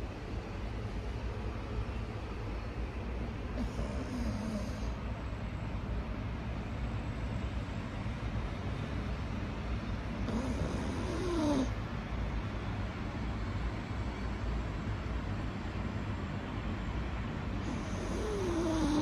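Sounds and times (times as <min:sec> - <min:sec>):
steady low hum: 0:00.0 - 0:19.0
dog snoring: 0:03.5 - 0:05.0, 0:10.2 - 0:11.8, 0:17.6 - 0:19.0.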